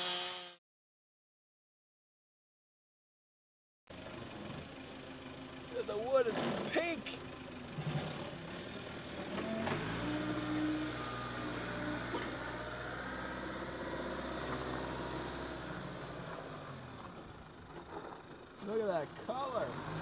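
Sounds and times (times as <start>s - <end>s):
engine running steadily: 3.9s - 9.9s, 12.1s - 20.0s.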